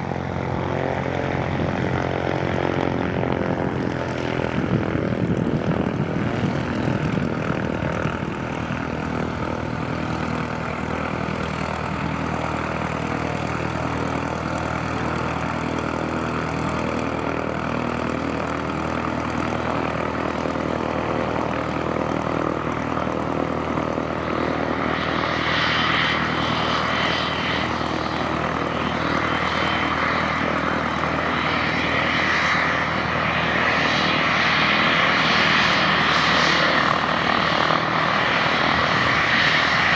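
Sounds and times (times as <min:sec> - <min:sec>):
airplane engine humming: 0:00.0 - 0:39.9.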